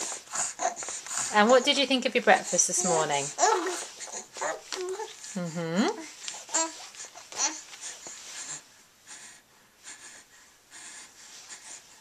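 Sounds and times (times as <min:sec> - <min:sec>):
baby sucking on fist: 0:00.0 - 0:01.3, 0:03.4 - 0:05.4
baby breathing in soft puffs: 0:00.0 - 0:12.0.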